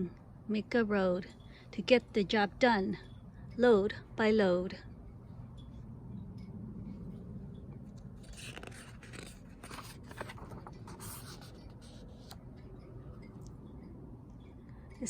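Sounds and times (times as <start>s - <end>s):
paper rustling and scraping: 8.2s - 12.4s
page turning click: 8.3s - 11.4s.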